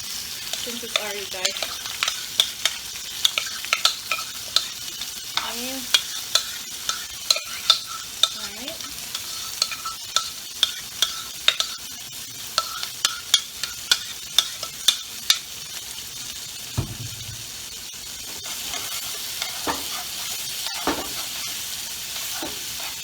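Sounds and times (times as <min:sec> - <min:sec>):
vegetables sizzling in a frying pan: 0:00.0 - 0:23.0
dull knocks: 0:16.8 - 0:17.6
utensil tapping against pan: 0:19.6 - 0:20.0.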